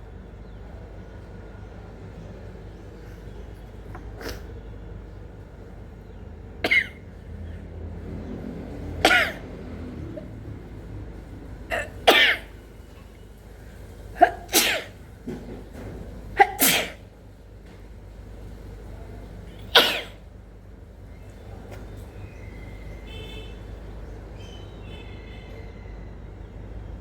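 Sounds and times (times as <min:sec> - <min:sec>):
person sneezing: 0:04.2 - 0:04.5, 0:09.0 - 0:09.4, 0:14.2 - 0:15.0, 0:16.4 - 0:17.0, 0:19.6 - 0:20.2.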